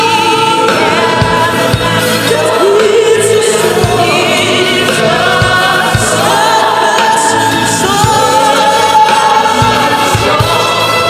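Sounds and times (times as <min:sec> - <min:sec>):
gospel choir singing: 0:00.0 - 0:11.0.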